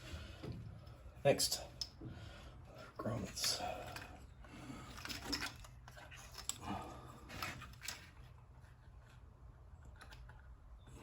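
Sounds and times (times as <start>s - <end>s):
small parts clicking and rustling: 3.0s - 11.0s.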